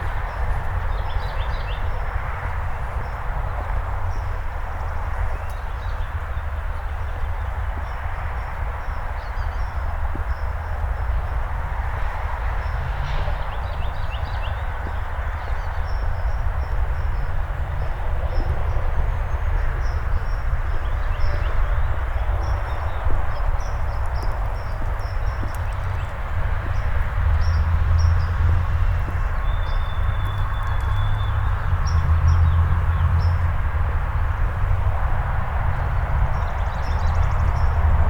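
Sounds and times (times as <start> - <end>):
footsteps on street: 21.7 - 35.0
small birds chirping: 22.2 - 33.4.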